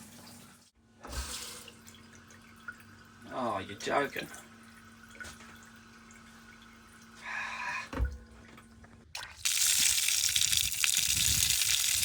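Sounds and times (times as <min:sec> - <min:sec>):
tap water rushing: 0:07.9 - 0:12.0.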